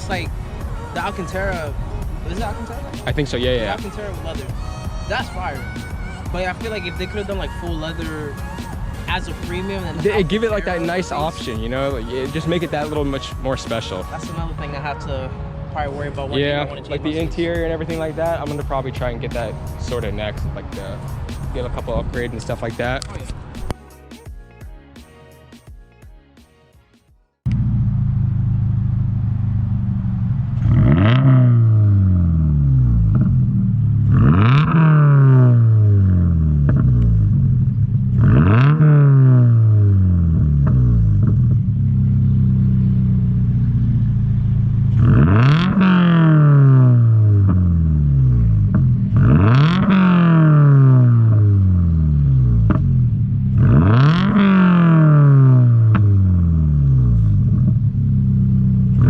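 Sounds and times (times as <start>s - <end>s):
engine idling: 27.5s - 30.8s, 40.3s - 45.4s
car engine revving: 27.5s - 59.0s.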